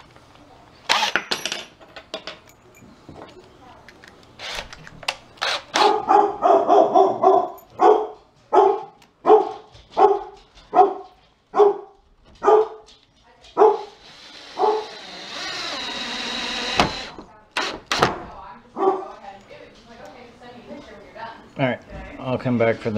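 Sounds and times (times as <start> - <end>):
dog barking: 5.8 - 12.9, 13.6 - 14.0, 14.6 - 14.9, 18.8 - 19.2.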